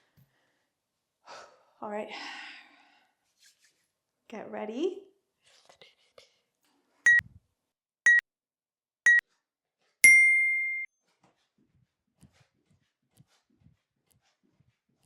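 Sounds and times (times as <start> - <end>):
long higher timer beep: 10.0 - 10.9
short timer beeps: 10.0 - 10.9.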